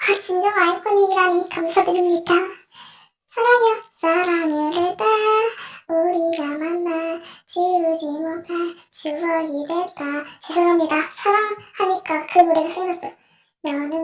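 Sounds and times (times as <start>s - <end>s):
child singing: 0.0s - 2.7s, 3.3s - 14.0s
child breathing: 2.6s - 3.2s, 5.5s - 5.9s, 7.2s - 7.5s, 10.2s - 10.5s.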